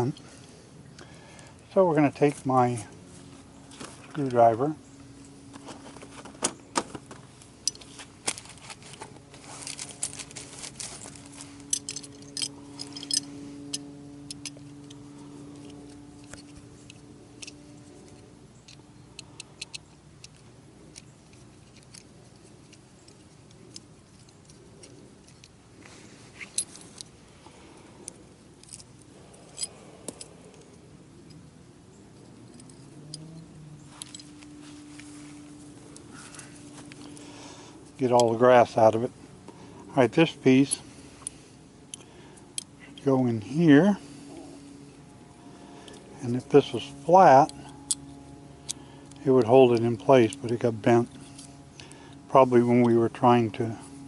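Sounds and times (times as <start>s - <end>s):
steady low hum: 0.0s - 54.0s
screwdriver clicking and scraping metal: 15.6s - 25.6s.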